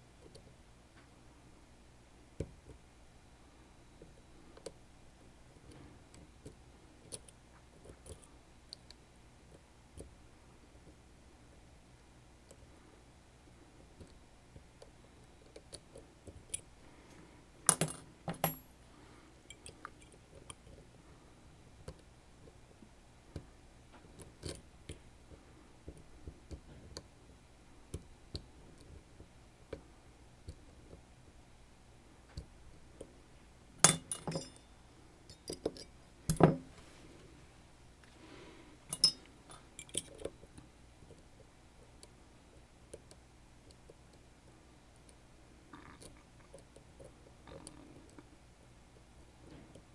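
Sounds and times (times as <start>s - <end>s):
metal clicks of lockpicking tools: 33.8s - 34.6s, 35.3s - 36.5s, 38.9s - 40.3s.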